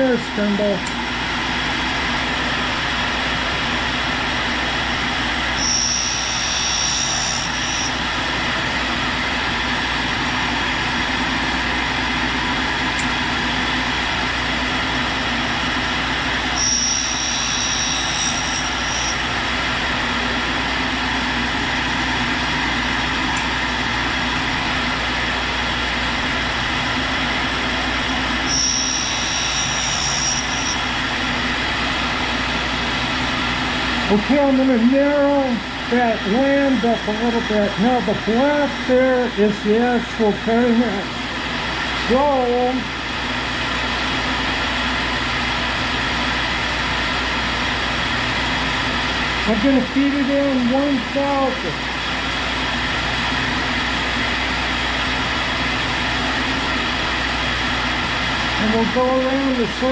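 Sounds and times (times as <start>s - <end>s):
high-pitched grinding tone: 5.5s - 8.5s, 16.5s - 19.3s, 28.0s - 31.8s
air spindle hissing: 5.6s - 8.2s, 16.6s - 19.2s, 28.5s - 31.1s.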